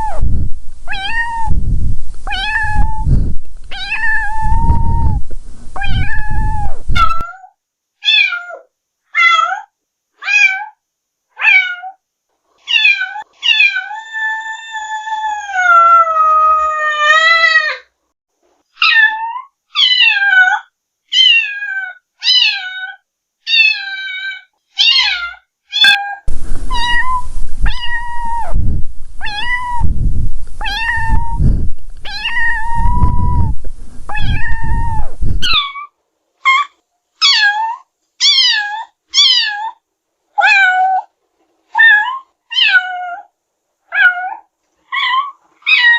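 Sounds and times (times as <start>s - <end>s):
rumbling background noise: 0.0s - 7.2s, 26.3s - 35.5s
cat meowing: 0.9s - 1.6s, 2.2s - 3.1s, 3.7s - 5.2s, 5.8s - 10.8s, 11.4s - 12.0s, 12.6s - 17.9s, 18.8s - 28.6s, 29.2s - 29.9s, 30.6s - 39.8s, 40.4s - 41.1s, 41.7s - 43.3s, 43.9s - 45.9s.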